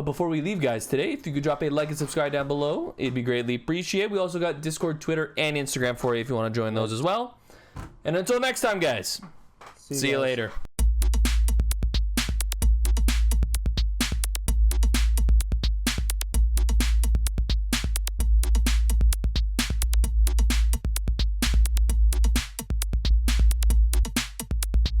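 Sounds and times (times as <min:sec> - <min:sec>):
electronic music: 0:10.8 - 0:25.0.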